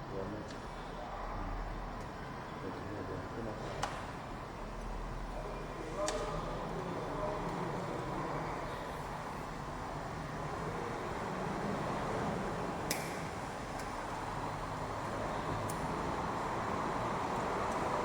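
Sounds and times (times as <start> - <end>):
steady background noise: 0.0 - 18.0.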